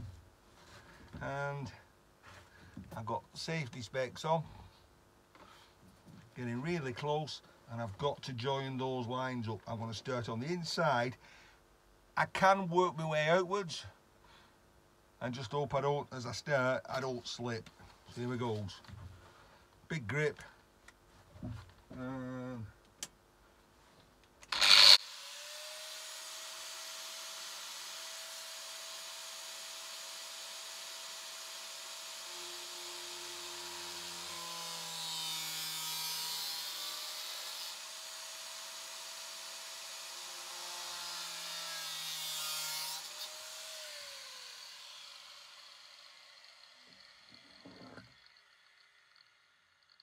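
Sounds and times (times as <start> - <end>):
angle grinder cutting: 24.5 - 50.0.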